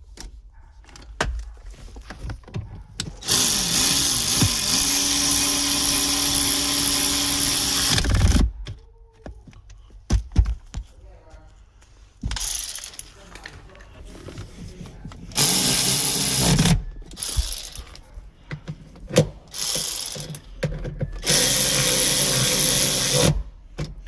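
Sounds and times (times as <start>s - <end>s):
cordless power driver running: 3.2s - 8.5s, 15.3s - 17.8s, 19.5s - 20.4s, 21.2s - 23.5s.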